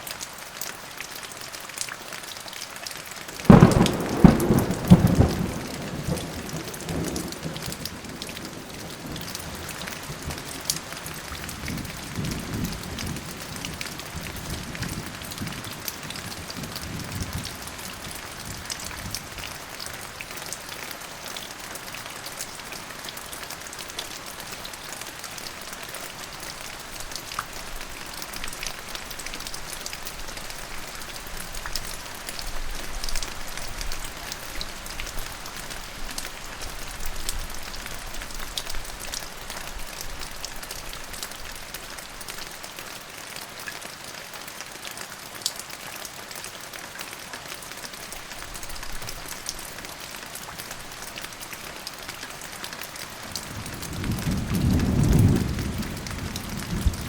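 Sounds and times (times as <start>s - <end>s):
rain pattering on a surface: 0.0s - 57.0s
distant thunder rumble: 3.5s - 7.8s, 53.5s - 57.0s.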